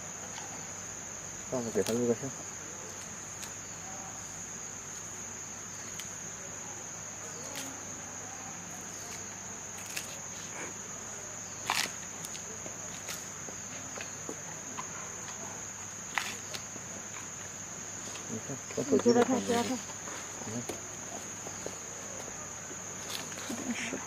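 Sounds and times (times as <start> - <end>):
panda crunching bamboo: 11.6 - 12.4.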